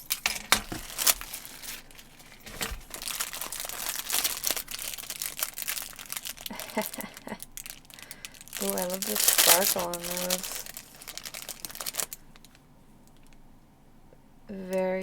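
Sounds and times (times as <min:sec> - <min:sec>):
plastic packaging crinkling: 0:00.0 - 0:12.6.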